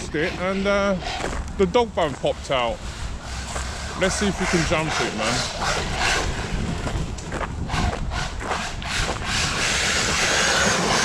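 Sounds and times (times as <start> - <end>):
rc truck driving over rough ground: 0.0 - 11.0
rc truck hissing: 8.2 - 11.0.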